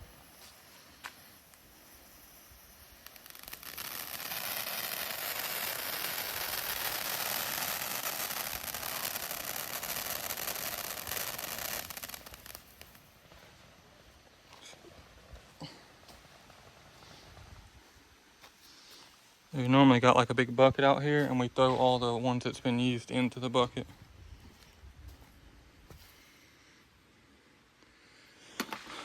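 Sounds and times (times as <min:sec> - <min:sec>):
firework fountain hissing and crackling: 0:00.0 - 0:14.4.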